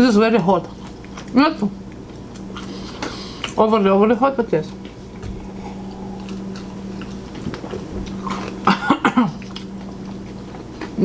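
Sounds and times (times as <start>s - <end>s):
steady low hum: 0.0s - 11.0s
person coughing: 8.6s - 9.4s.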